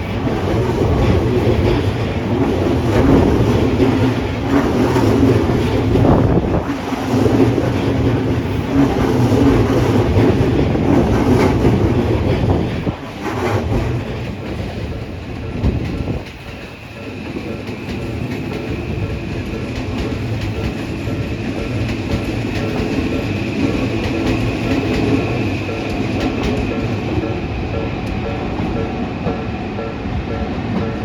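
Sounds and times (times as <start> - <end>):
train wheels clattering: 0.0 - 31.0
crossing warning bell ringing: 14.4 - 31.0.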